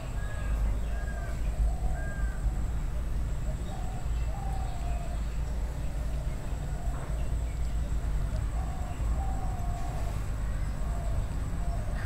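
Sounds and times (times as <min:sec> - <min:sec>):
birds calling: 0:00.0 - 0:12.0.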